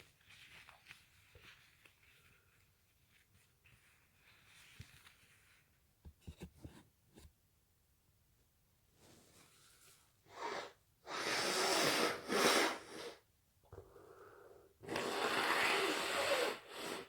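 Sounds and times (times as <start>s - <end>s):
noisy nasal blasts of air: 10.3s - 13.2s, 14.8s - 17.0s.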